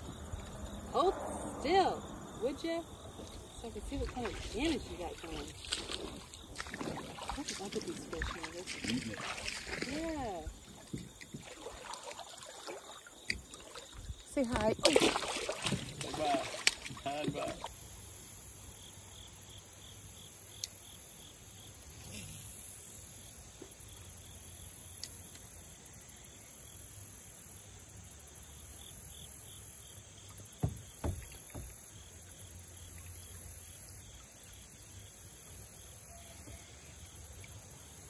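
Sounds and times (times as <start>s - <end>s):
crickets and insects chirping: 0.0s - 38.0s
dull knocks: 30.6s - 31.9s.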